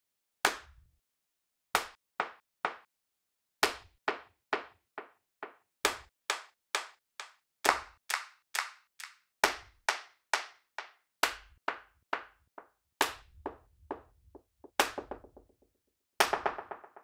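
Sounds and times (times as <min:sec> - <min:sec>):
hand claps with delay echoes: 0:03.6 - 0:14.0, 0:14.6 - 0:15.3, 0:16.2 - 0:17.0.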